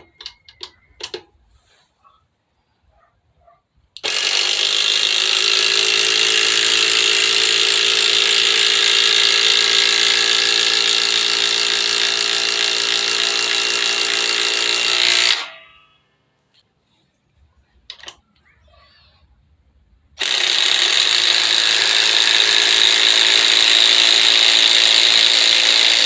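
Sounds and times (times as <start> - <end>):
cordless impact driver running: 4.0 - 15.6, 20.2 - 26.0.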